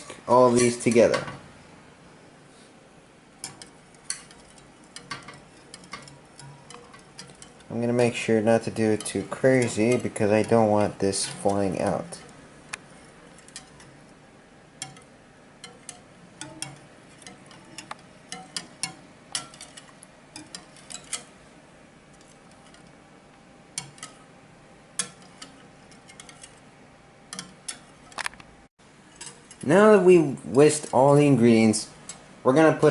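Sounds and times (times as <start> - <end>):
whisk tapping against a bowl: 3.4 - 14.1, 14.7 - 21.3, 23.8 - 24.3, 25.0 - 26.6, 27.3 - 28.2.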